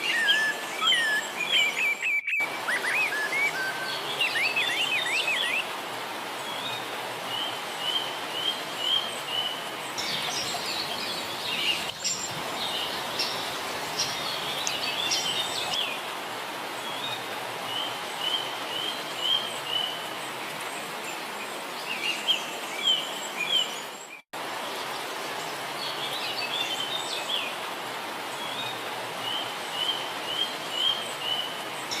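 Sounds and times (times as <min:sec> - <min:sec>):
birds varied chirps: 0:00.0 - 0:05.7
bird quick chirps: 0:01.9 - 0:05.6.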